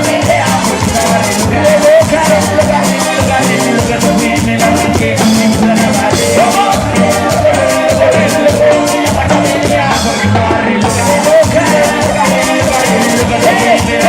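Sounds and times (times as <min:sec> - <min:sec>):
live band music: 0:00.0 - 0:14.0.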